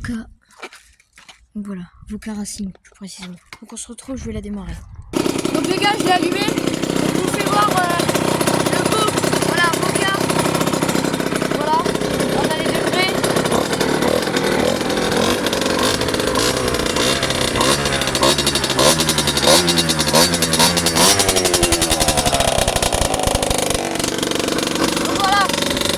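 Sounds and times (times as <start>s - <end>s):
two-stroke engine revving: 5.2s - 25.9s.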